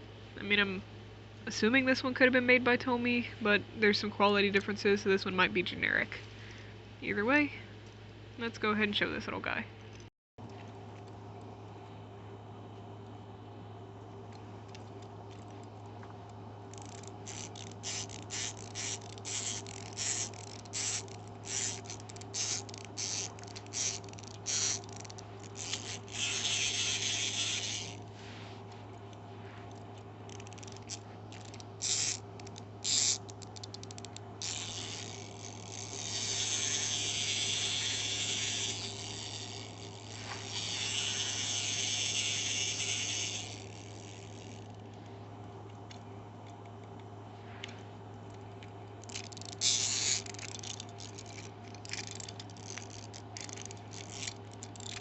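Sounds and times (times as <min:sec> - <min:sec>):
clockwork spring motor whirring: 0:14.6 - 0:28.1, 0:29.7 - 0:45.0, 0:49.0 - 0:55.0
winding key ratchet clicks: 0:16.3 - 0:28.1, 0:29.7 - 0:44.9, 0:48.3 - 0:55.0.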